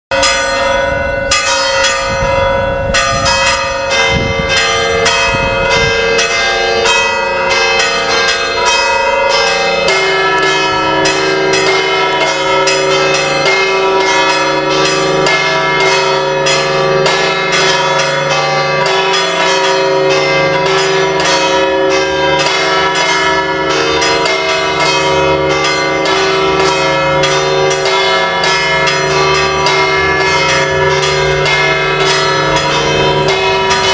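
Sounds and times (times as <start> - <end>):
church bells pealing: 0.1 - 33.9
lower bell tone: 0.2 - 14.2.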